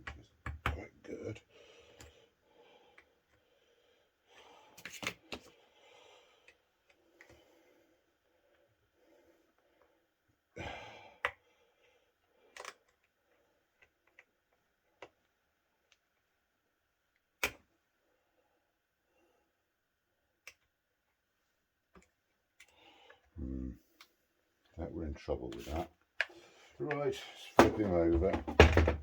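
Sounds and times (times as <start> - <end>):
clicks and knocks of tools on plastic: 0.0 - 0.8, 12.5 - 13.2, 13.8 - 15.3.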